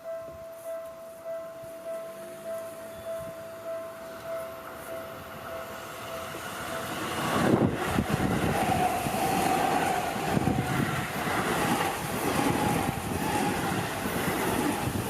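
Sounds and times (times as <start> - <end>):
level-crossing bell ringing: 0.0 - 7.2
train passing close by: 0.0 - 15.0.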